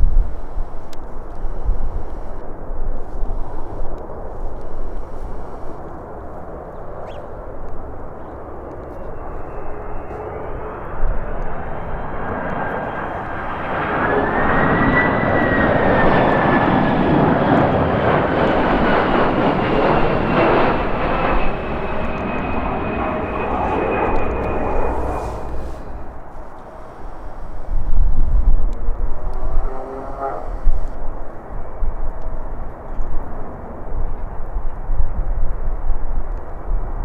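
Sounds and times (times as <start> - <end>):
jet engines passing: 0.0 - 36.1
wind rumble on microphone: 0.0 - 37.0.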